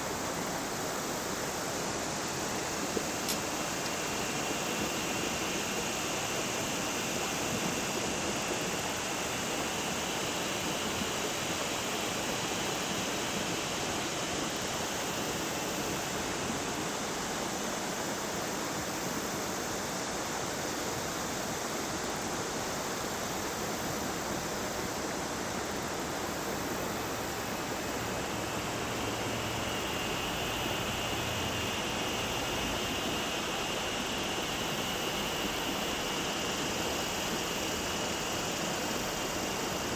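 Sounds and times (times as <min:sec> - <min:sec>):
river water rushing: 0:23.6 - 0:39.9.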